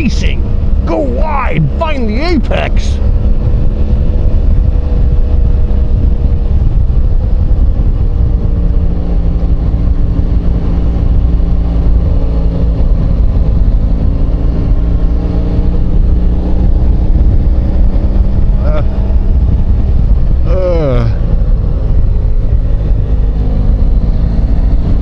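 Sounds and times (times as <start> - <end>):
vehicle engine and road noise: 0.0 - 25.0.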